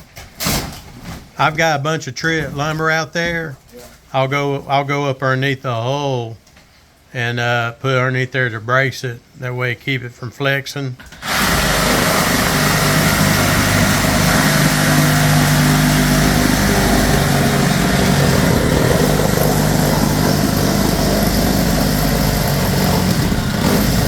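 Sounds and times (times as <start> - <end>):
motor droning: 11.2 - 24.0.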